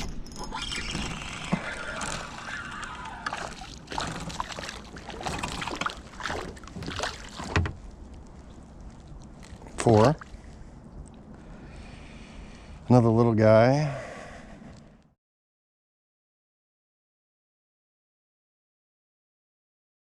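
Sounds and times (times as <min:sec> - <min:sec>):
water sloshing around kayak: 0:01.6 - 0:11.7
knocks against boat: 0:05.8 - 0:07.8.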